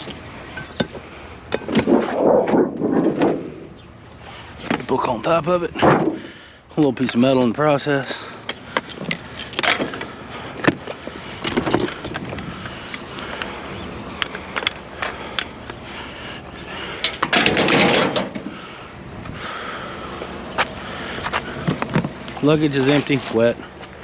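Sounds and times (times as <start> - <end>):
scrap metal knocks and clanks: 17.0 - 18.6.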